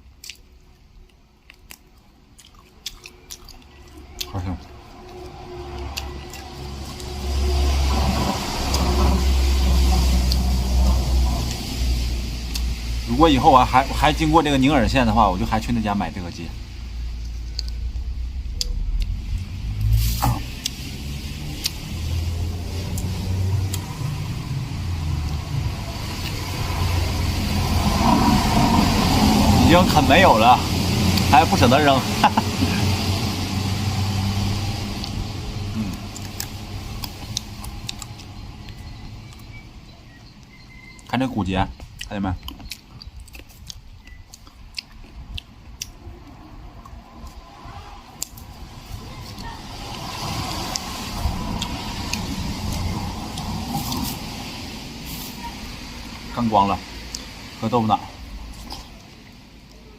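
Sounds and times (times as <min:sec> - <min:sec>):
road vehicle rumble: 0:00.0 - 0:59.9
sharp clicks and crunches: 0:00.1 - 0:07.2, 0:17.2 - 0:20.8, 0:35.0 - 0:39.6, 0:40.2 - 0:47.5
person chewing meat off bone: 0:00.2 - 0:07.2, 0:34.8 - 0:39.6, 0:41.8 - 0:47.4, 0:58.5 - 0:59.8.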